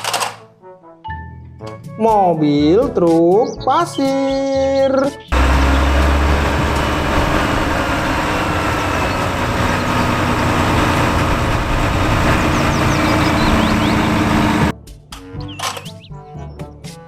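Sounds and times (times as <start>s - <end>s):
truck engine rumbling: 5.3s - 14.7s.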